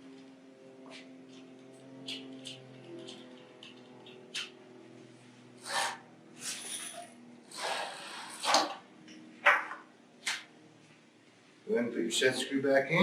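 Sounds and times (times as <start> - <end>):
metal rails scraping: 5.6 - 8.8.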